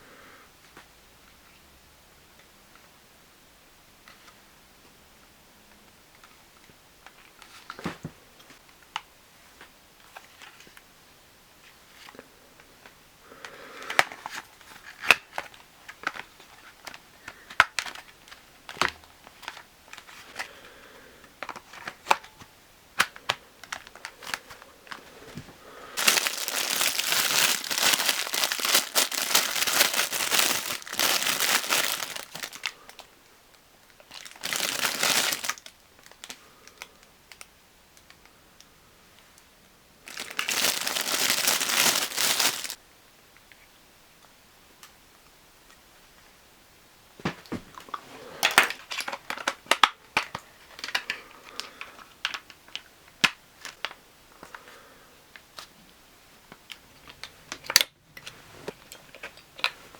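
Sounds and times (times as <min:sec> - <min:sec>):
plastic packaging clicks: 0:13.8 - 0:20.6, 0:21.4 - 0:25.0, 0:26.0 - 0:33.1, 0:33.9 - 0:38.3, 0:40.1 - 0:42.8, 0:48.4 - 0:54.6, 0:56.5 - 0:59.8
plastic crinkling and tearing: 0:26.0 - 0:33.1, 0:33.9 - 0:37.4, 0:40.1 - 0:42.8.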